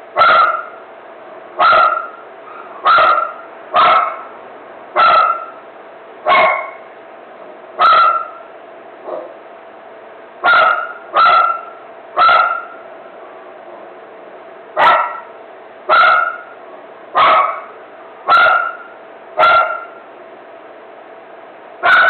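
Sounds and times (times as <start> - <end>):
dog barking: 0.2 - 0.8, 1.6 - 4.3, 5.0 - 5.6, 6.3 - 6.9, 7.8 - 8.4, 9.0 - 9.4, 10.4 - 12.8, 14.8 - 15.3, 15.9 - 16.5, 17.2 - 20.0.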